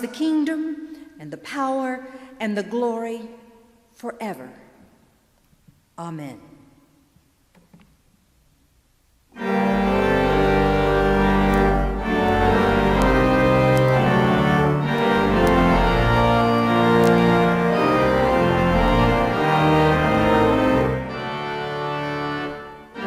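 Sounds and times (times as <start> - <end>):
organ playing slow chords: 9.4 - 23.0.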